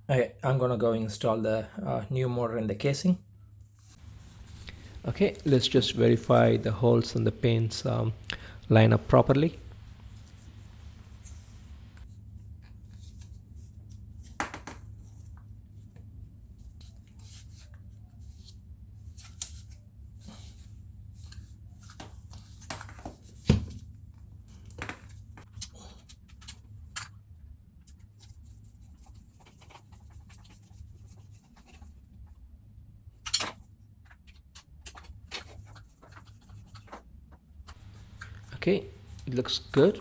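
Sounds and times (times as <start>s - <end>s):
steady low hum: 3.2s - 14.2s, 37.4s - 40.0s.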